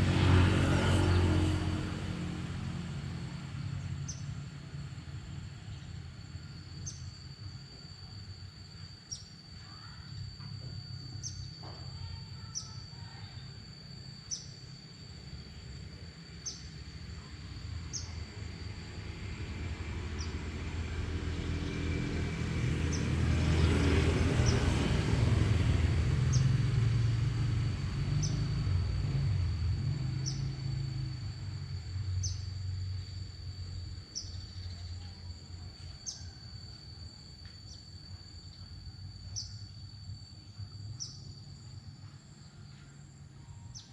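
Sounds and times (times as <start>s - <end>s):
passing vehicle rumble: 0.0s - 7.3s, 14.0s - 37.0s
insect trill: 0.0s - 43.9s
high insect chirps: 0.2s - 43.9s.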